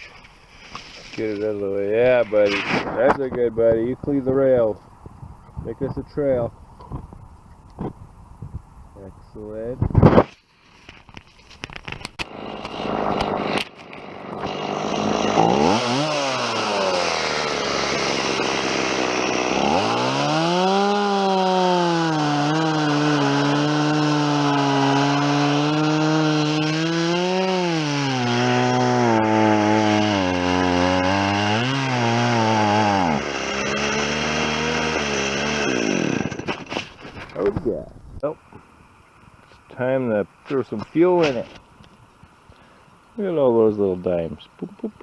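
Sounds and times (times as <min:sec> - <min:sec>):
chainsaw cutting wood: 0:00.0 - 0:04.4, 0:09.9 - 0:37.6, 0:40.4 - 0:42.7.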